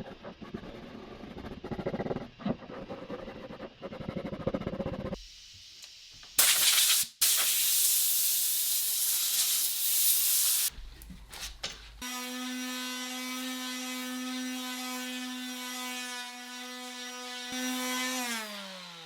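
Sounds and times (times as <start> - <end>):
spray hissing: 6.4 - 10.7.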